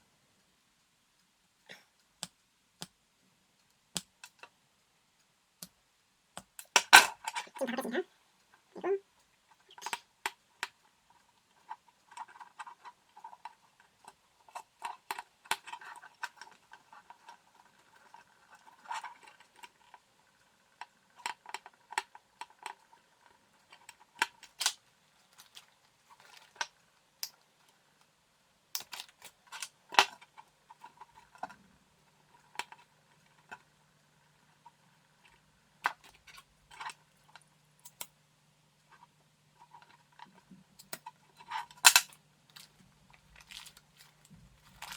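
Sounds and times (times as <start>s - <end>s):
plastic parts and tools clicking: 9.6s - 20.1s, 20.7s - 27.5s, 28.8s - 31.6s, 35.2s - 38.1s, 38.9s - 44.9s.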